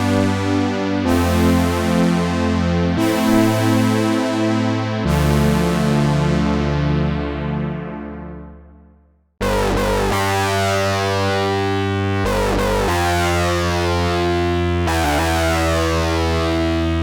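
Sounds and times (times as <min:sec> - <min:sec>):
buzzy distorted synthesizer tone: 0:09.4 - 0:17.0.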